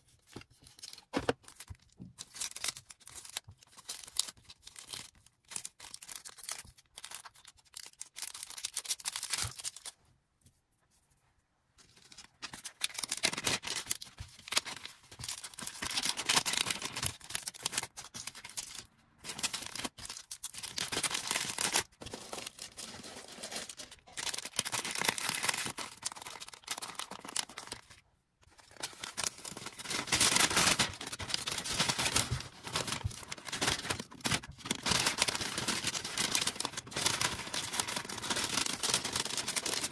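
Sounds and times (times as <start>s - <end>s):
packaging rustling and tearing: 11.9s - 39.9s.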